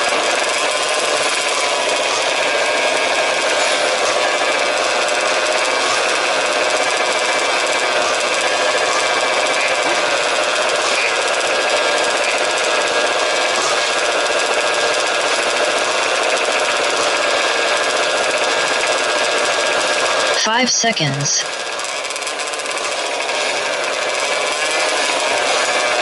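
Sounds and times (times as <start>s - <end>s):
small engines buzzing: 0.0s - 26.0s.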